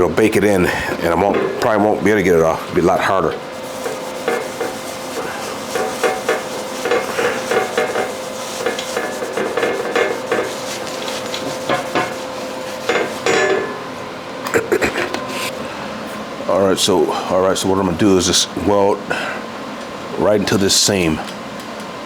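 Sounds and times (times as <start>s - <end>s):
steady hum: 0.0s - 22.0s
scrubbing metal plate: 0.3s - 13.9s.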